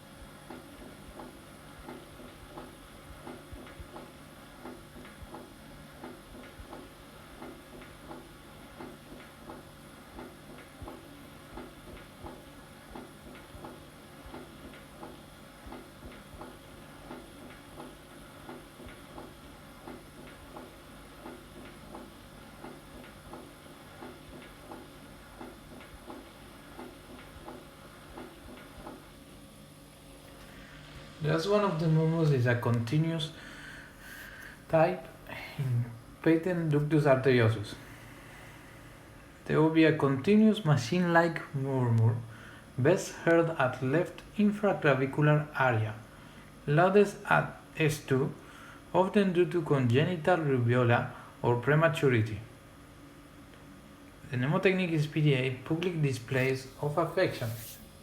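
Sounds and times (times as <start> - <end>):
heartbeat: 0.1 - 29.1.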